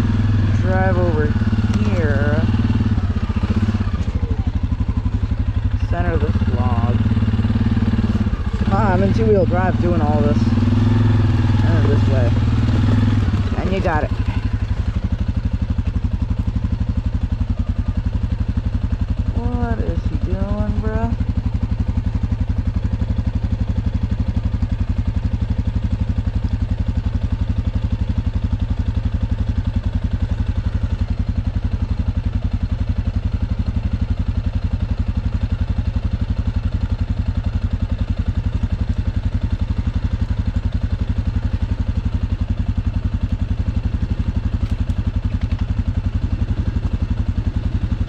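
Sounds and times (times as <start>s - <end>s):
atv engine idling: 0.0s - 48.0s.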